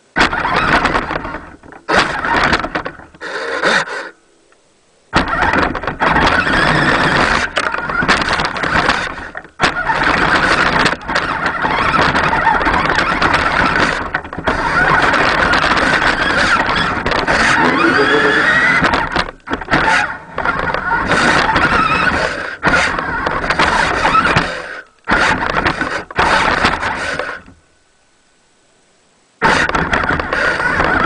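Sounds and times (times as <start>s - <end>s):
toy truck motor running: 0.2s - 4.2s, 5.2s - 27.6s, 29.4s - 31.0s
motor whine rising in pitch: 17.5s - 18.8s.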